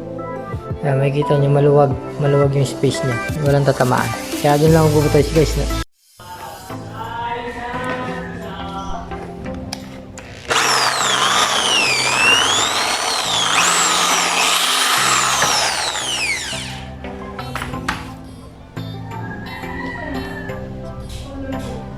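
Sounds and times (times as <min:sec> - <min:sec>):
power drill boring a hole: 0:10.4 - 0:16.9.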